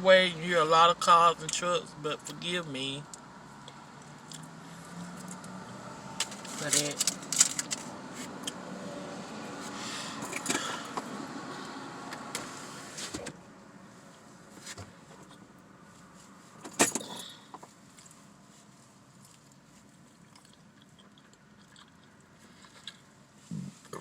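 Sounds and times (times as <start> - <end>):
highway traffic passing: 0.0 - 23.5
clicks and rustles inside car: 6.2 - 7.9, 14.5 - 15.5, 16.5 - 18.2.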